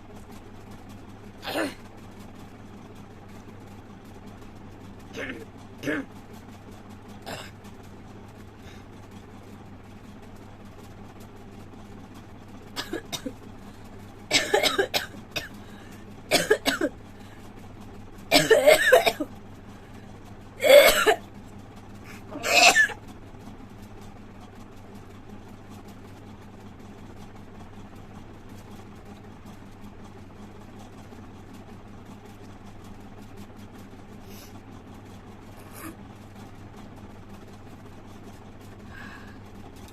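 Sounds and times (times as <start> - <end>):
steady low hum: 0.0 - 39.9
woman coughing and spitting: 1.4 - 1.8, 5.2 - 6.1, 7.3 - 7.5, 12.8 - 13.3, 14.3 - 15.6, 16.3 - 16.9, 18.3 - 19.3, 20.6 - 21.2, 22.4 - 23.0.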